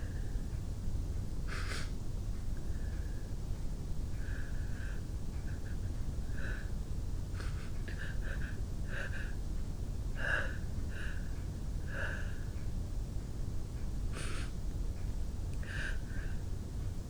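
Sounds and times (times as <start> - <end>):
woman gasping sniffing breaths: 1.5 - 2.0, 4.2 - 6.8, 10.2 - 12.6, 14.1 - 14.6, 15.6 - 16.4.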